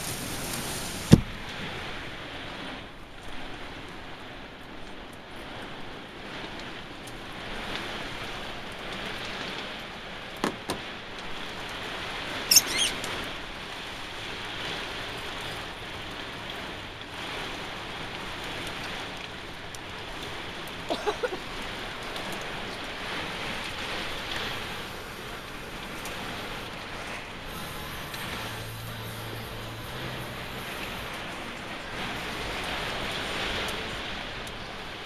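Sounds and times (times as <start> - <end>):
heavy rain hissing: 0.0 - 2.8, 20.0 - 35.0
brief high squeak: 12.5 - 13.0.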